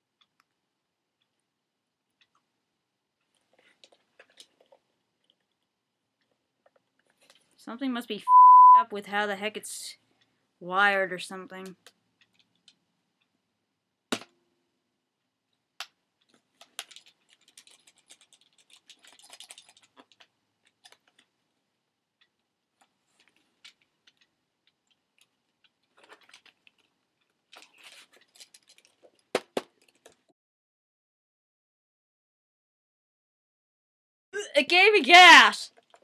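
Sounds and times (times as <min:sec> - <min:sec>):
small rattles and scrapes: 0:03.3 - 0:07.6, 0:16.2 - 0:21.3, 0:22.8 - 0:30.3
plastic toy clicks: 0:16.6 - 0:21.2.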